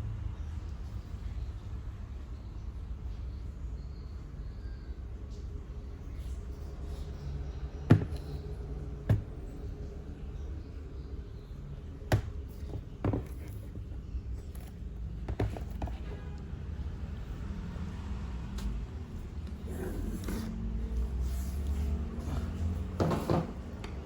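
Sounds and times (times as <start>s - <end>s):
laptop clicks and knocks: 12.1s - 13.6s.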